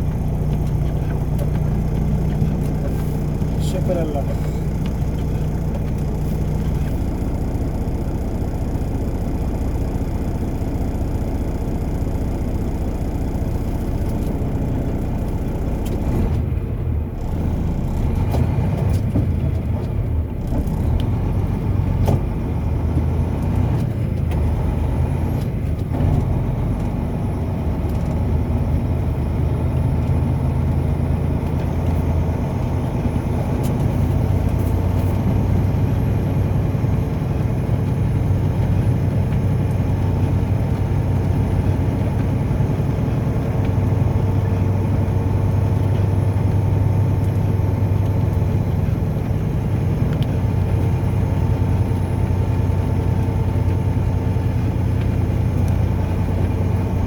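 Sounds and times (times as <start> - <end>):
car engine and tyre rumble: 0.0 - 57.0.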